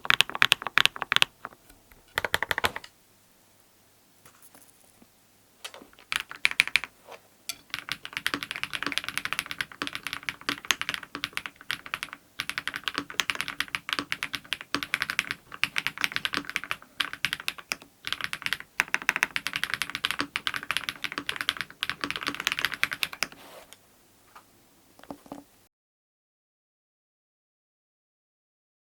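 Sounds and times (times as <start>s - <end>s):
fast mechanical keyboard typing: 0.0s - 2.9s, 6.0s - 6.9s, 7.6s - 23.4s.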